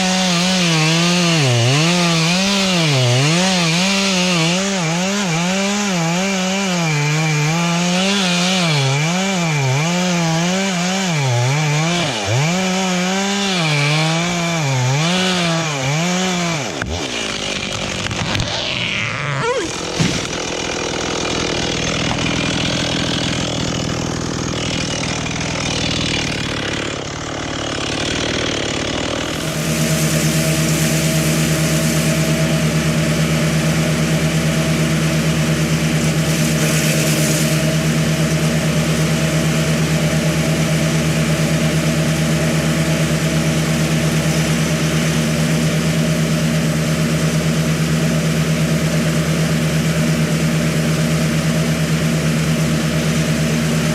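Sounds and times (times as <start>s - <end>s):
small engine running: 0.0s - 53.9s.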